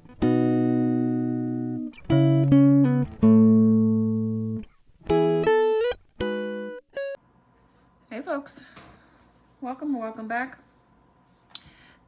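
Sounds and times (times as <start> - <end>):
plucked string tune: 0.1 - 7.2.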